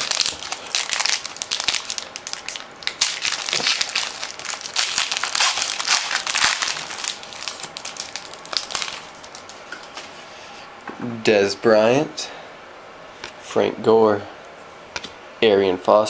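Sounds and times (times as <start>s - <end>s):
card pack wrapper crinkling: 0.0s - 10.1s.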